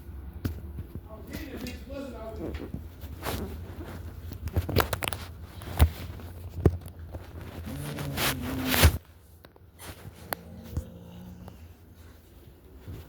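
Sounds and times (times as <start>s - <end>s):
shuffling: 0.8s - 13.0s
dog growling low: 7.6s - 9.0s, 10.1s - 11.8s.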